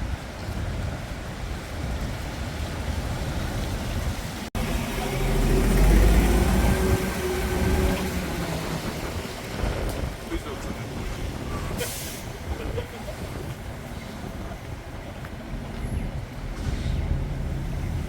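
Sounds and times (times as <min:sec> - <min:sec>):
street traffic: 0:00.0 - 0:18.0
wind rumbling on microphone: 0:00.0 - 0:18.0
heavy vehicle engine hum: 0:04.3 - 0:09.8.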